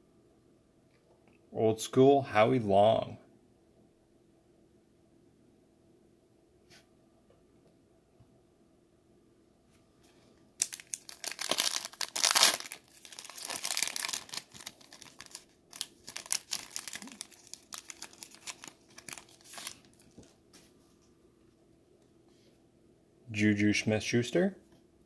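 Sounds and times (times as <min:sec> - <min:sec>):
wrapper tearing and crinkling: 0:10.6 - 0:20.3.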